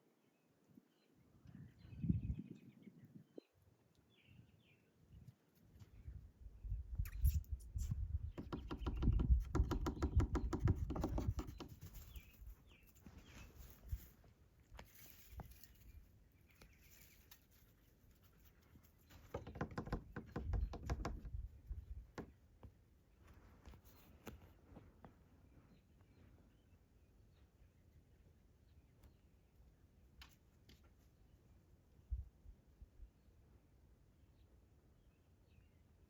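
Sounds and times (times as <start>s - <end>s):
scratching and pattering movement: 8.8s - 19.5s.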